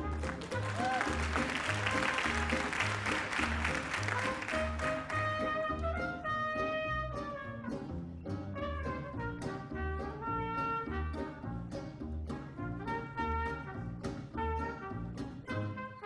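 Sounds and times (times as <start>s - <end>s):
saxophone: 0.0s - 7.6s
trumpet: 0.0s - 7.9s, 8.5s - 11.7s, 12.6s - 16.0s
walking bass line: 0.0s - 15.9s.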